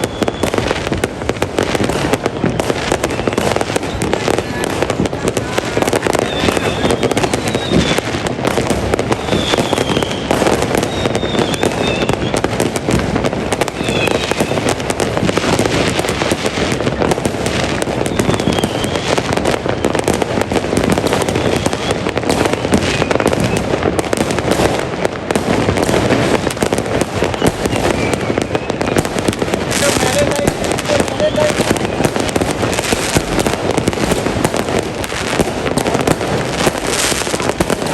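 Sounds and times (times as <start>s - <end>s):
high whistles: 0.0s - 0.7s, 9.2s - 12.4s, 13.8s - 14.6s, 18.1s - 19.2s, 27.3s - 29.0s
fireworks bangs and crackling: 0.0s - 37.9s.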